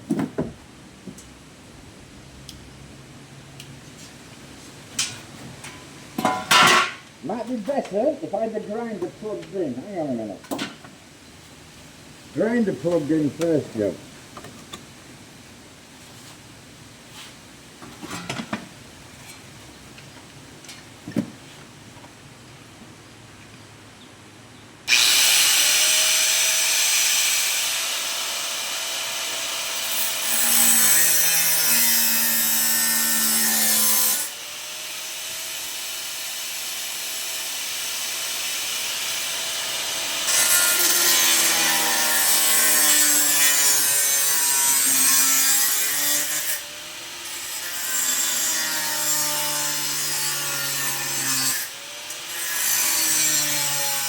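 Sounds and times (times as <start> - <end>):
angle grinder cutting steel: 24.9 - 54.0.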